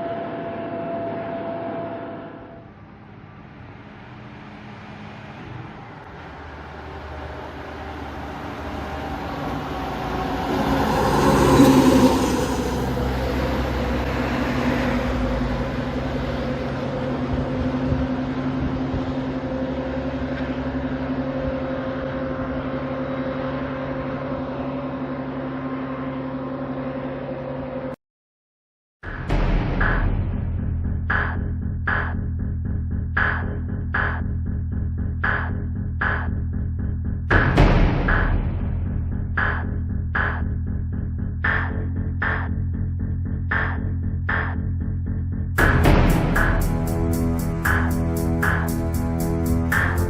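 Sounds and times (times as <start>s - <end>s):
vehicle engine running: 2.1s - 28.0s, 29.3s - 50.0s.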